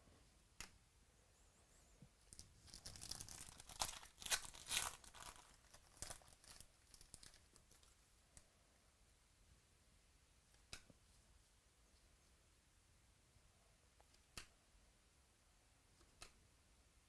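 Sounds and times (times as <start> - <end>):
wrapper torn and crinkled: 2.3 - 8.0.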